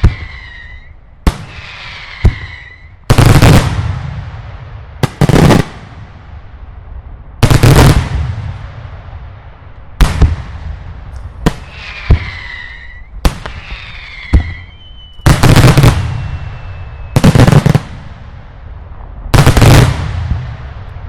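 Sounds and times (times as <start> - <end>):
falling firework whistles: 0.0 - 3.0, 11.3 - 17.9
firework bangs: 0.0 - 6.7, 7.4 - 21.0
rapid-fire firework volleys: 10.0 - 18.4.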